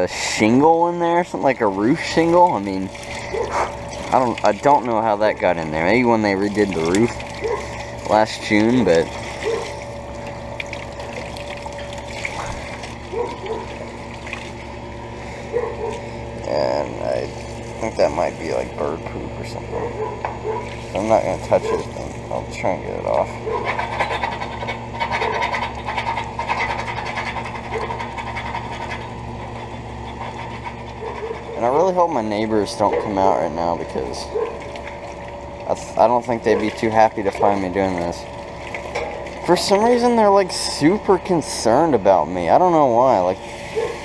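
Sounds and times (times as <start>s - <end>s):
air conditioner humming: 0.0s - 44.0s
water splashing and trickling: 0.1s - 44.0s
scratching and scraping: 19.7s - 31.8s.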